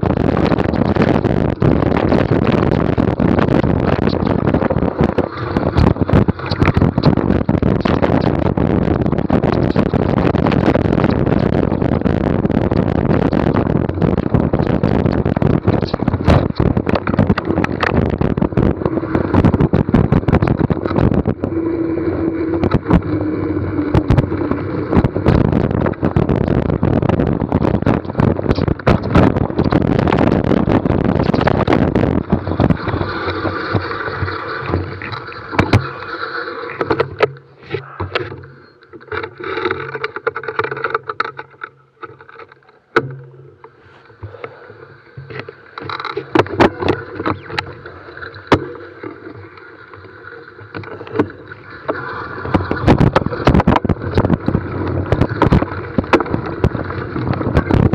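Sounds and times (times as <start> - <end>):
bike rattling over rough ground: 0.0 - 44.5, 45.3 - 57.9
tyres and wind rushing: 0.0 - 44.6.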